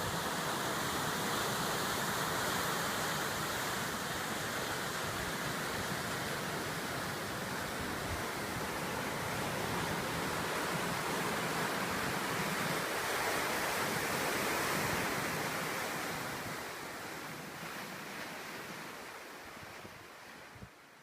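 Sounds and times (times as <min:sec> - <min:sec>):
ocean surf breaking on shore: 0:00.0 - 0:20.8.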